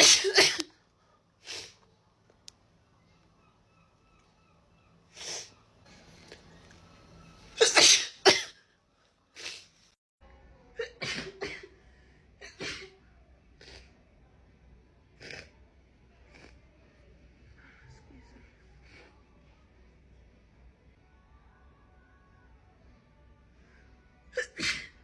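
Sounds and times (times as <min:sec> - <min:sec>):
woman sneezing: 0:00.0 - 0:00.6, 0:07.6 - 0:08.5, 0:24.4 - 0:25.0.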